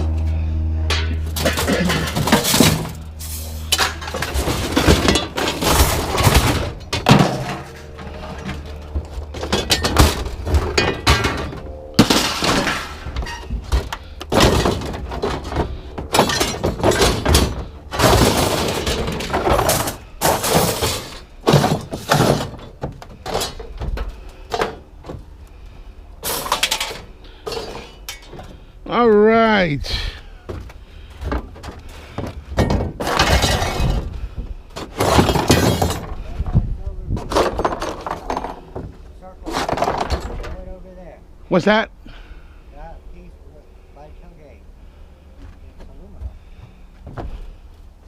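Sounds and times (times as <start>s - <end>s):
scrap metal clanking: 0.1s - 25.3s, 26.2s - 28.7s, 29.9s - 36.5s, 37.1s - 40.7s.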